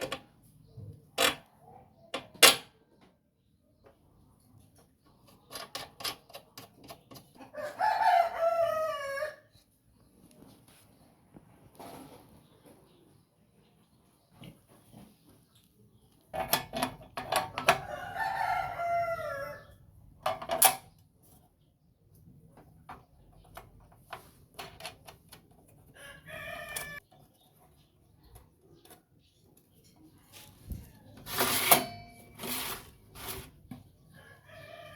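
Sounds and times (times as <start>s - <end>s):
rooster crowing: 7.5s - 9.5s, 17.8s - 19.7s, 26.0s - 27.0s, 34.2s - 34.9s.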